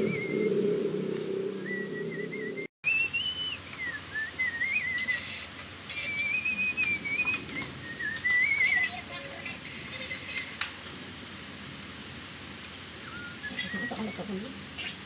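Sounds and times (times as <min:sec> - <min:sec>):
person whistling a tune: 0:01.6 - 0:08.8, 0:13.0 - 0:14.0.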